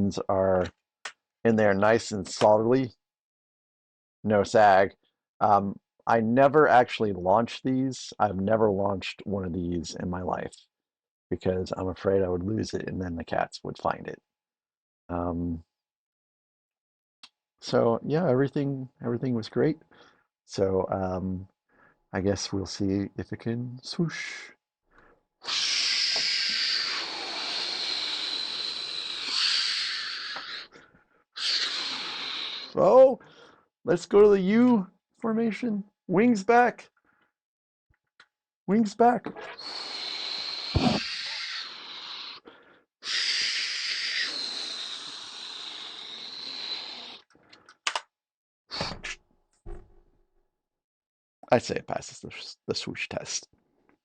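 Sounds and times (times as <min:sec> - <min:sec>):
mouth whooshing hisses: 0:39.4 - 0:42.5, 0:43.1 - 0:47.2
short clicks: 0:47.5 - 0:48.1.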